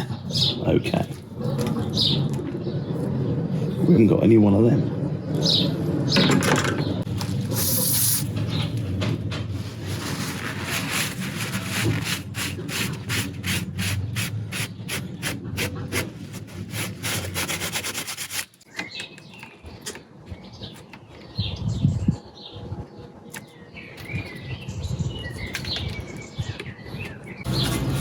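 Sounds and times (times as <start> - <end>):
hand scraping metal surface: 7.4 - 18.6, 27.5 - 28.0.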